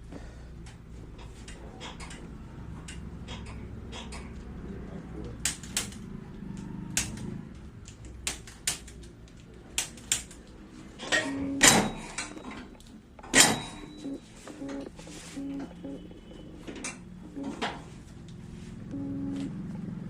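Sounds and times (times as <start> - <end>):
joints cracking: 5.4 - 15.1.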